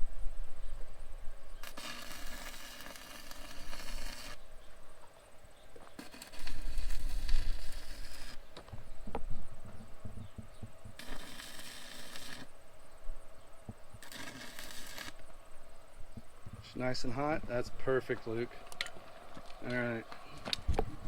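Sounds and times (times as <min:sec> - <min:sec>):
welding arc crackling: 0:01.6 - 0:04.5, 0:05.9 - 0:08.9, 0:10.7 - 0:12.7, 0:13.7 - 0:21.0.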